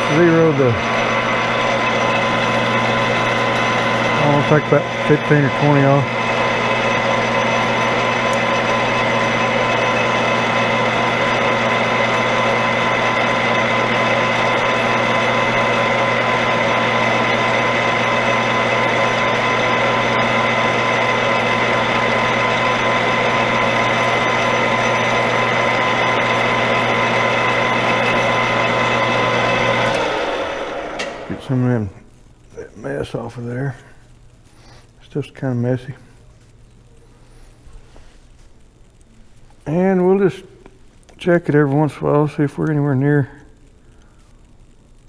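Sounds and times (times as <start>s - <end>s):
metal lathe humming: 0.0s - 32.0s
high gear whine: 0.0s - 34.2s.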